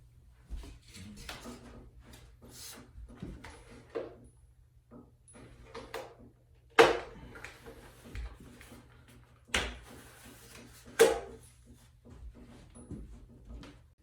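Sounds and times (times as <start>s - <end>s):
tools knocking and scraping: 4.9s - 14.0s.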